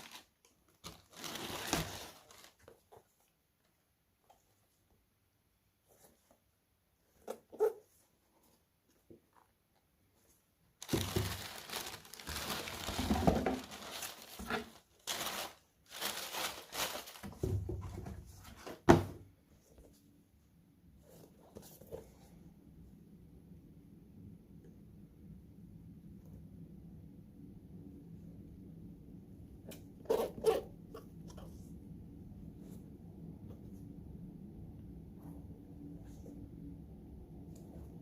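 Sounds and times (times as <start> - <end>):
paper and cardboard rustling: 0.0 - 3.3, 10.2 - 18.8.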